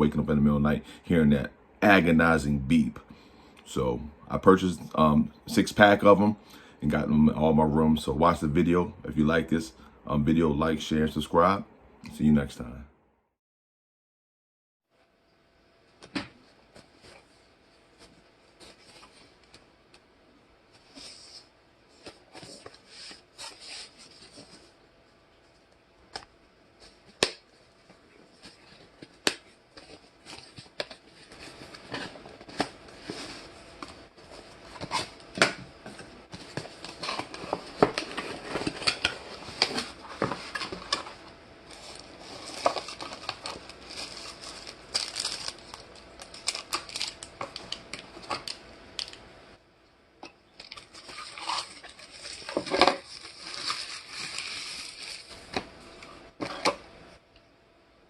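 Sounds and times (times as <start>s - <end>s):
rustling and crinkling: 15.9s - 49.2s, 50.6s - 56.8s.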